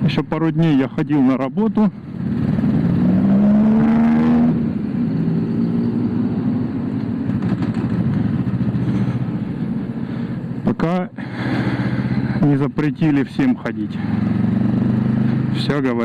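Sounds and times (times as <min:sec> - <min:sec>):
motorcycle engine accelerating: 0:01.8 - 0:10.6, 0:11.4 - 0:12.5, 0:13.2 - 0:16.0.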